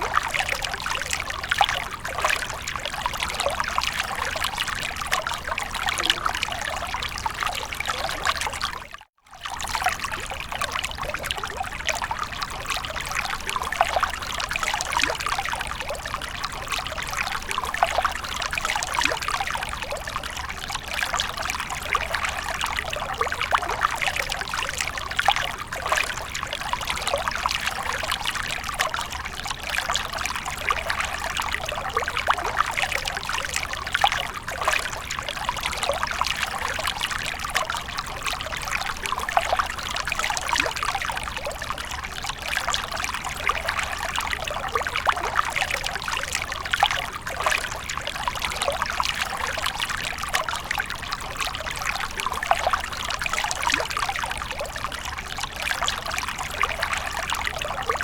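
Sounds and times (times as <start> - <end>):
fountain water splashing: 0.0 - 8.7.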